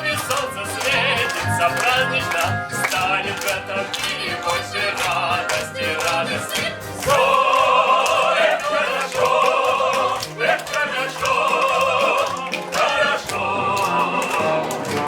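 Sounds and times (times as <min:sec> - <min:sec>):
musical accompaniment: 0:00.0 - 0:15.0.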